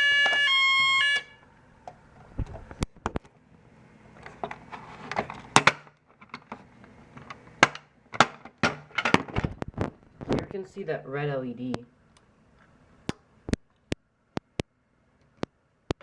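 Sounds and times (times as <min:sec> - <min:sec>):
harsh alarm tone stepping up: 0:00.0 - 0:01.5
clicks and knocks of handling: 0:04.2 - 0:10.5.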